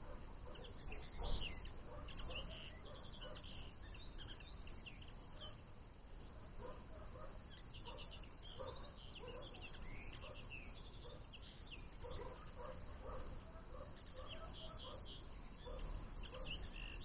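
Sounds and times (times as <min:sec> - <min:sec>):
songbirds twittering: 0:00.0 - 0:17.0.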